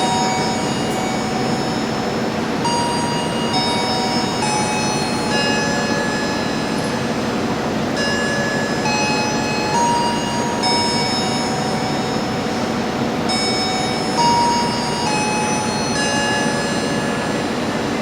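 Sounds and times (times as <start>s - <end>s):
high ringing tones: 0.0s - 18.0s.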